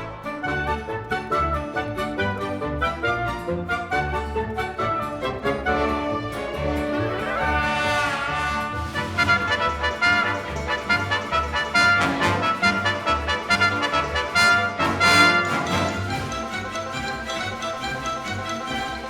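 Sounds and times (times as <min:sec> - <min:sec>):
brass music over bass beat: 0:07.4 - 0:16.3.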